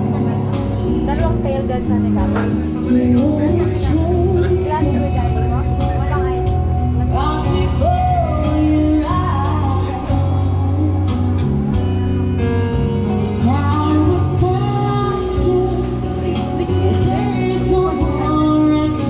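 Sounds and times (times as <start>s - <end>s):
heavy bass line: 0.0s - 19.0s
person singing: 7.0s - 12.1s, 13.2s - 19.0s.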